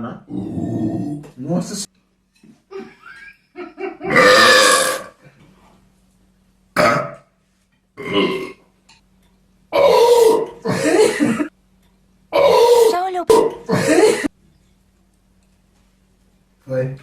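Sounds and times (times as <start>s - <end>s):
person burping loudly: 4.1s - 5.2s, 6.8s - 7.2s, 8.0s - 8.6s, 9.8s - 11.4s, 12.4s - 14.3s.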